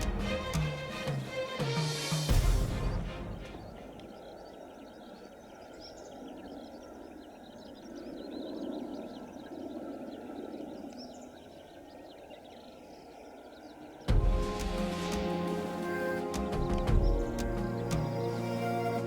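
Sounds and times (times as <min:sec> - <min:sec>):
small birds chirping: 0:02.3 - 0:19.0
steady low rumble: 0:14.1 - 0:19.0.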